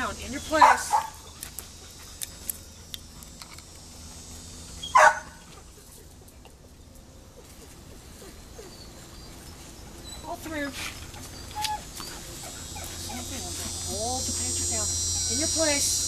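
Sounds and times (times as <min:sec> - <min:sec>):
dog barking: 0:00.6 - 0:01.3, 0:04.9 - 0:05.4.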